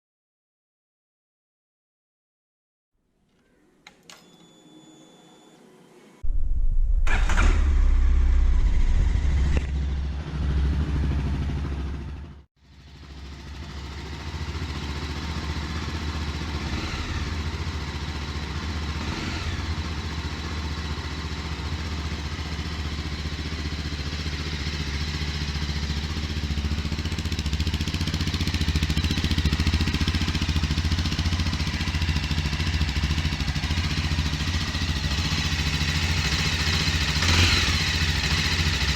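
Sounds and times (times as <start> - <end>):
motorcycle engine running: 8.3 - 38.9.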